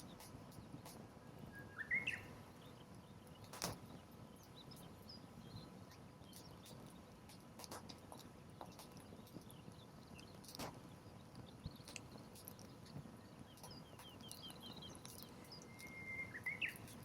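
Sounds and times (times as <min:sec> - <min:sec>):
bird chirp: 0:00.0 - 0:07.1, 0:08.6 - 0:17.0
wood fire crackling: 0:02.9 - 0:17.0.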